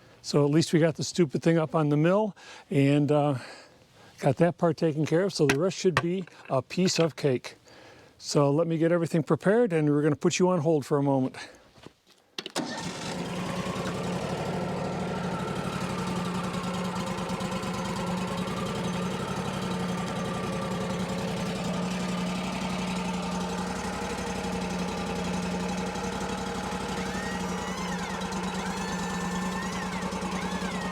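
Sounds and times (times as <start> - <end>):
sawmill engine running: 12.6 - 30.9.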